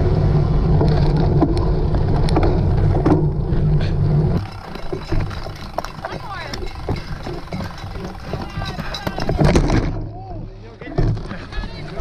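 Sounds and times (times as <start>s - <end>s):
clicks and rattles: 4.4s - 10.0s.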